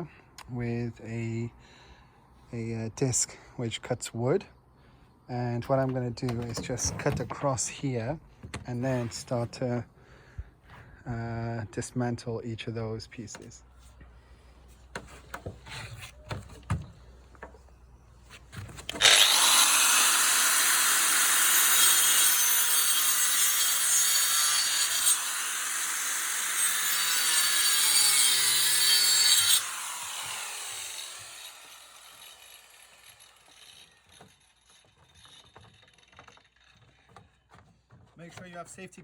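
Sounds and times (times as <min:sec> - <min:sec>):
angle grinder cutting wood: 0:18.8 - 0:36.7.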